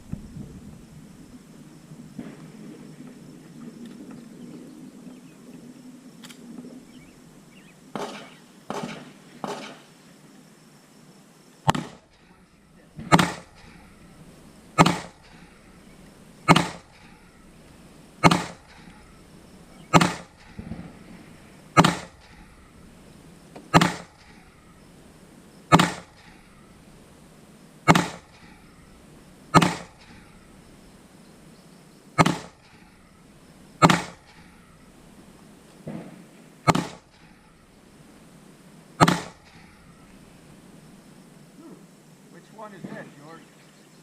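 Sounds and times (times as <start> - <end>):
faint gunshots: 7.9 - 9.9, 11.7 - 12.1, 12.9 - 13.9, 14.7 - 15.5, 16.5 - 17.1, 18.2 - 18.9, 19.9 - 22.4, 23.7 - 24.4, 25.7 - 26.4, 27.8 - 28.5, 29.5 - 30.2, 32.2 - 32.8, 33.8 - 34.4, 35.8 - 37.3, 39.0 - 39.6, 42.8 - 43.1
loud sharp gunshots: 7.9 - 9.9, 11.7 - 12.1, 13.0 - 13.9, 14.7 - 15.4, 16.4 - 17.1, 18.2 - 18.9, 19.9 - 22.4, 23.7 - 24.4, 25.7 - 26.4, 27.8 - 28.4, 29.5 - 30.2, 32.2 - 32.6, 33.8 - 34.3, 35.8 - 37.2, 39.0 - 39.6.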